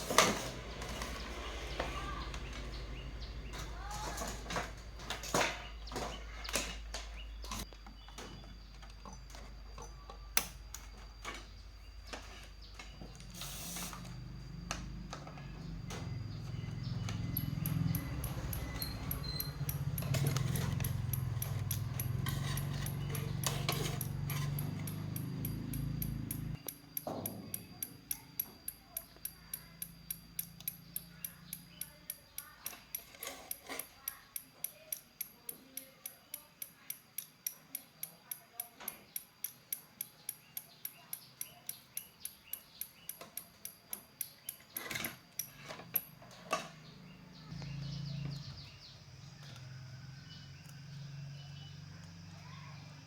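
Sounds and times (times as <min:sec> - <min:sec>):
faint high whine: 0:07.3 - 0:32.5
regular ticking: 0:14.2 - 0:46.3.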